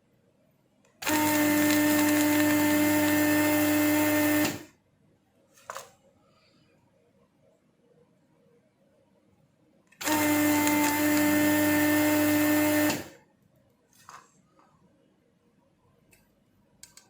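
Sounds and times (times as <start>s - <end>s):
desoldering pump motor: 1.0s - 4.7s, 10.0s - 13.2s.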